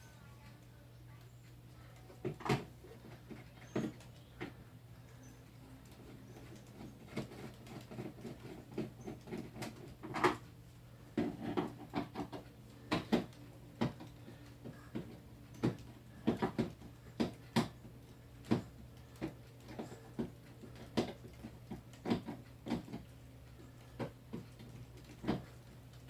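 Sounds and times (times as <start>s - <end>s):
steady low hum: 0.0s - 26.0s
screwdriver and hands tapping plastic case: 11.2s - 17.8s, 18.4s - 23.1s, 24.0s - 25.6s.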